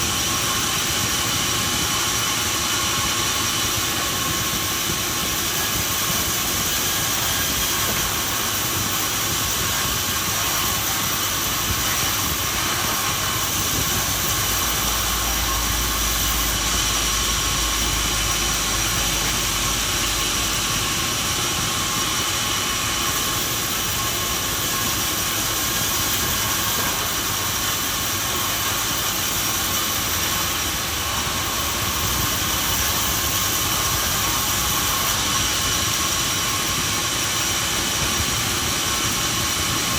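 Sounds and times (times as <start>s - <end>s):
sawmill machinery hiss and drone: 0.0s - 39.9s.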